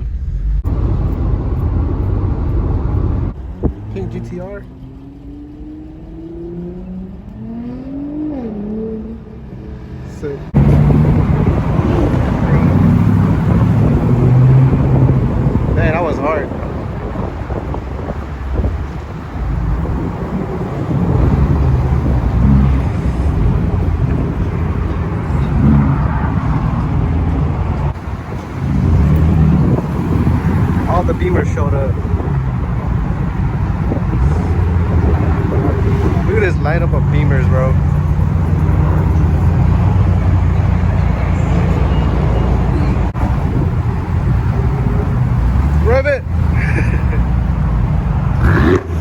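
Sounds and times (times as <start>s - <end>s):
car engine running: 0.0s - 7.4s, 10.2s - 41.5s.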